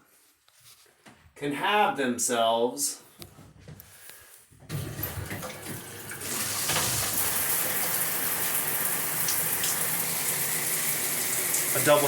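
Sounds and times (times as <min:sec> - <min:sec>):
shower water spraying: 0:04.9 - 0:12.0.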